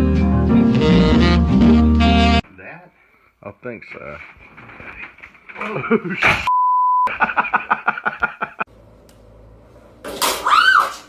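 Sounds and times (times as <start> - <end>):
censor bleep tone: 6.5 - 7.1.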